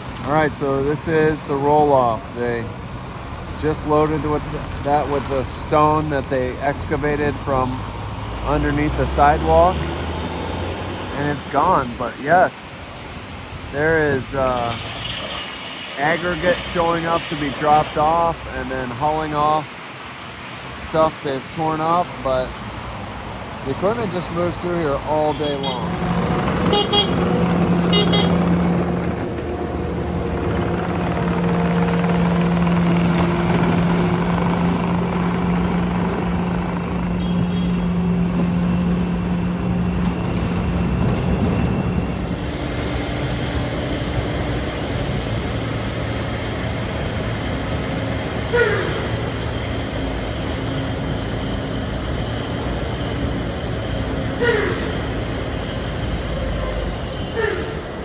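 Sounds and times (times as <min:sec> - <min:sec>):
diesel trucks and traffic engines: 0:00.0 - 0:58.0
short falling squeal: 0:57.2 - 0:58.0.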